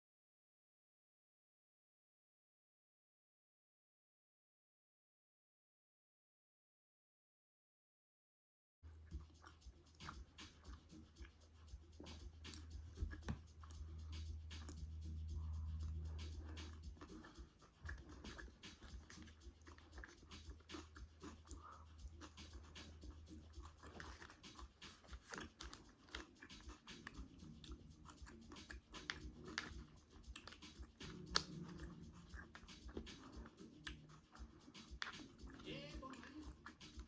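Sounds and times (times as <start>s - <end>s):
chewing fried chicken wings: 8.9s - 37.0s.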